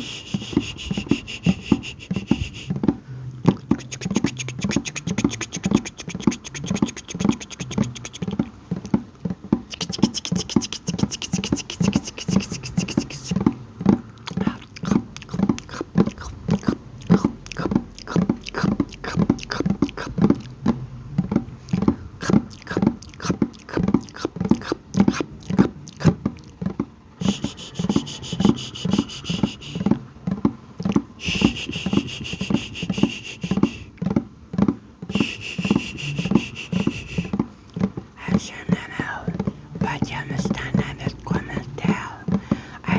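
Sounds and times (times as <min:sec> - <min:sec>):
high hissing: 0:00.0 - 0:02.7, 0:09.7 - 0:13.4, 0:27.2 - 0:30.0, 0:35.1 - 0:37.3
wet mouth pops and clicks: 0:00.0 - 0:09.0, 0:09.7 - 0:13.6, 0:14.2 - 0:20.7, 0:21.3 - 0:30.0, 0:30.8 - 0:34.1, 0:35.1 - 0:42.9.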